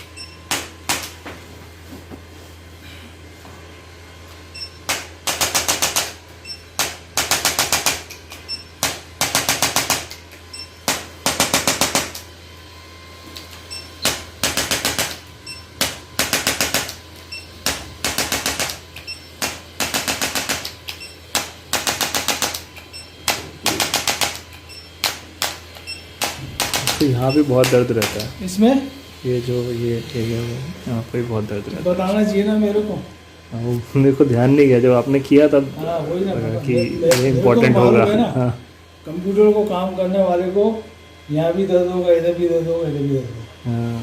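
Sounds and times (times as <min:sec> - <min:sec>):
sharp clicks: 0:17.7 - 0:28.3.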